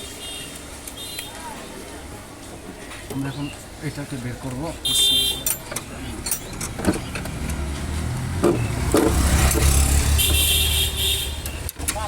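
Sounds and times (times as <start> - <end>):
vehicle engine rumble: 0.7 - 12.0
sharp knocks: 8.4 - 10.4.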